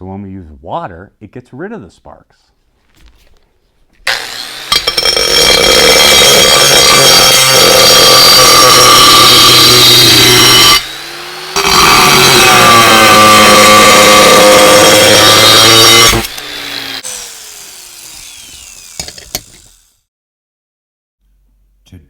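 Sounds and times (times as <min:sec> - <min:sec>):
angle grinder cutting stone: 0:04.1 - 0:20.0.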